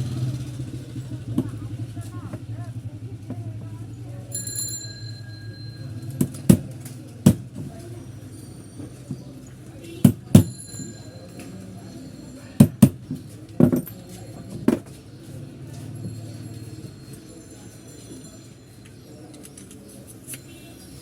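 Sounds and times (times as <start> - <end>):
metallic knocks on motor parts: 6.1 - 7.7, 10.0 - 10.6, 12.6 - 14.0.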